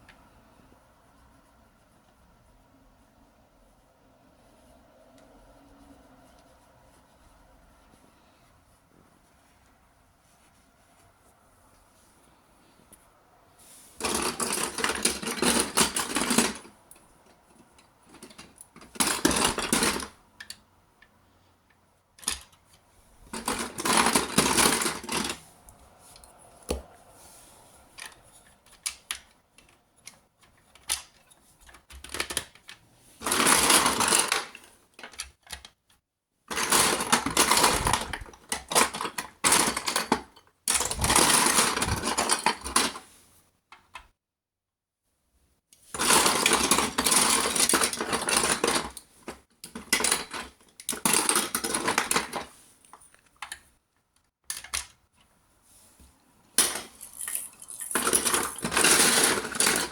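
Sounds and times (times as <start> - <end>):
marbles rattling down track: 56.7 - 59.4.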